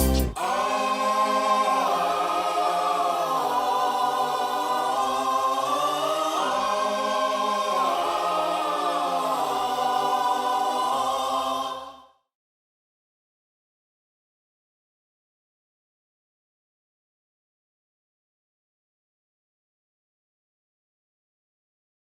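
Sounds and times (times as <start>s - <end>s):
choir singing: 0.0s - 12.2s.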